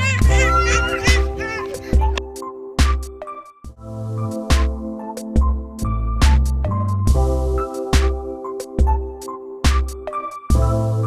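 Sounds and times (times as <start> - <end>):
electronic music with deep bass: 0.0 - 11.0.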